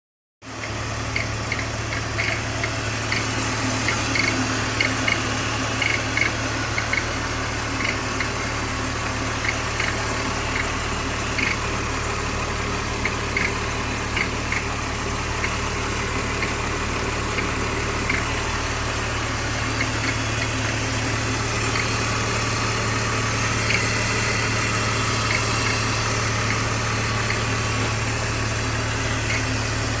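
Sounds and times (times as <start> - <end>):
car engine idling: 0.4 - 30.0
sharp ticks: 1.1 - 8.5, 9.4 - 10.7, 11.4 - 11.6, 13.0 - 14.7, 15.3 - 15.6, 17.3 - 18.4, 19.8 - 20.8, 23.4 - 27.5, 28.5 - 29.6.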